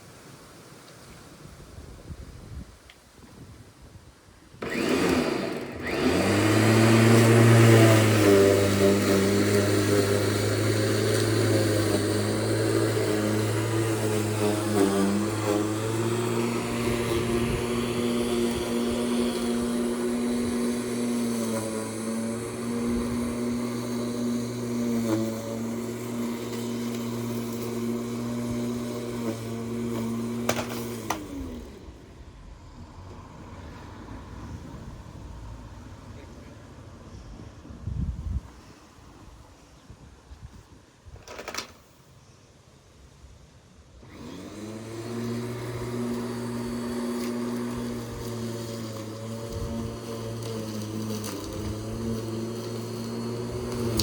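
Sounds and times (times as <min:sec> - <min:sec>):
lawn mower engine: 0:04.6 - 0:35.2, 0:41.2 - 0:41.9, 0:44.0 - 0:54.0.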